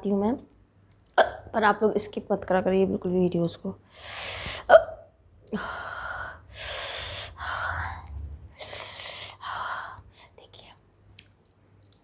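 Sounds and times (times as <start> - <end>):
woman hiccuping: 1.2 - 1.5, 4.7 - 5.1.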